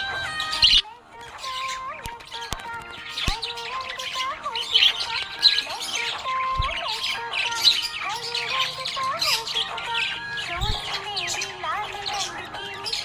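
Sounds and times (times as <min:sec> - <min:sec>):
budgerigar chirping: 0:00.0 - 0:00.8, 0:01.4 - 0:13.0
background music: 0:00.0 - 0:13.0.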